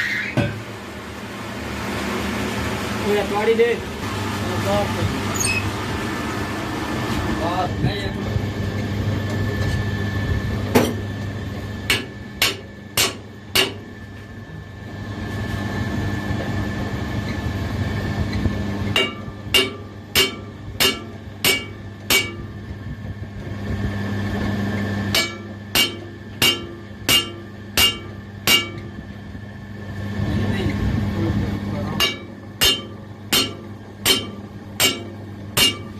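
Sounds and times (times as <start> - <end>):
steady low hum: 0.0 - 35.9
hammer striking steel shaft: 11.9 - 13.9, 18.9 - 22.5, 25.1 - 28.9, 32.0 - 35.9.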